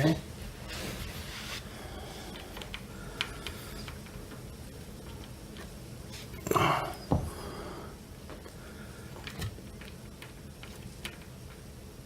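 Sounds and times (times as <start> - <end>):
hands rustling at wiring: 0.4 - 6.4, 8.3 - 11.7.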